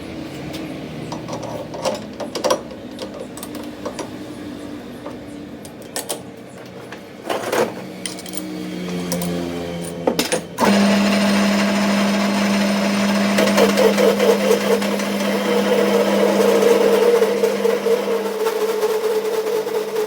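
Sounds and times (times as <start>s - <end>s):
rough machine working noise: 6.9s - 20.0s
electric motor humming: 10.6s - 18.7s.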